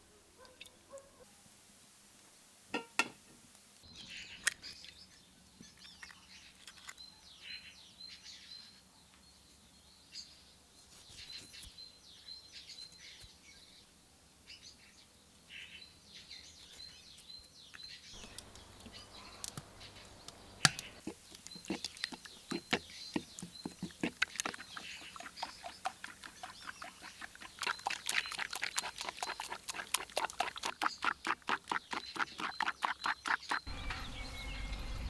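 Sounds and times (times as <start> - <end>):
small birds chirping: 3.8 - 13.9, 14.5 - 35.0
sharp clicks: 18.2 - 21.0.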